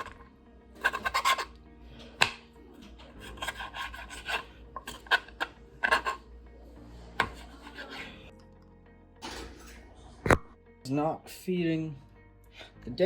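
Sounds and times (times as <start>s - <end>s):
rubbing and scraping by hand: 0.8s - 1.5s, 3.1s - 6.3s.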